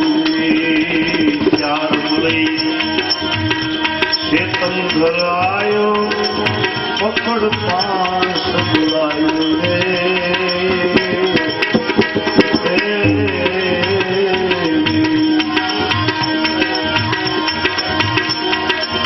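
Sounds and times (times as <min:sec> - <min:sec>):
tabla rhythm: 0:00.0 - 0:19.0
melodic instrument playing tune: 0:05.0 - 0:19.0.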